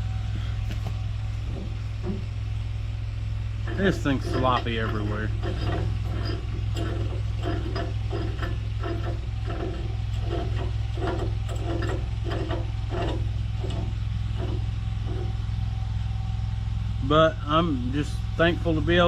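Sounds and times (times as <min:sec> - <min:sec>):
tractor engine running: 0:00.0 - 0:19.0
regular clunking: 0:00.6 - 0:02.8, 0:03.6 - 0:15.4.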